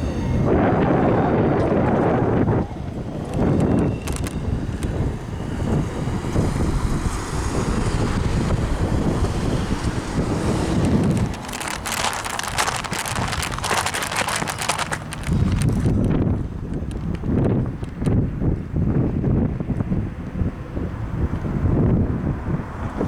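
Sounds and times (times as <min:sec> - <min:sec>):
wind buffeting microphone: 0:00.0 - 0:23.0
crackling: 0:03.3 - 0:04.9, 0:09.9 - 0:18.0.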